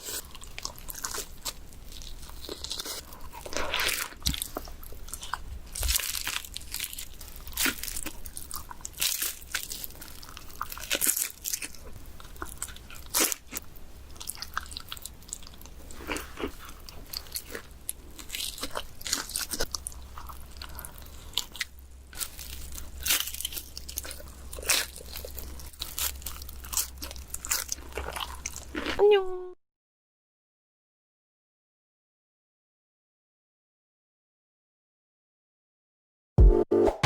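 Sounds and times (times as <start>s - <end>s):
pizza crust crunching: 0.0s - 29.0s.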